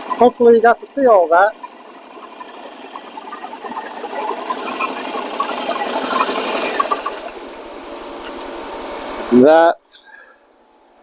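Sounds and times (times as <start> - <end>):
motorcycle engine idling: 6.4 - 9.5.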